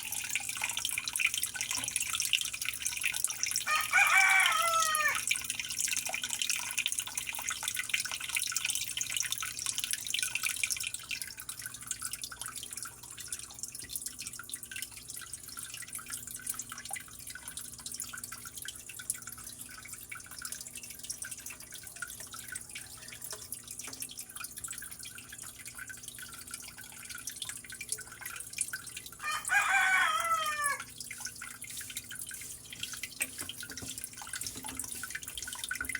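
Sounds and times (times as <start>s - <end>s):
water trickling and dripping: 0.0s - 35.9s
rooster crowing: 3.6s - 5.2s, 29.2s - 30.9s.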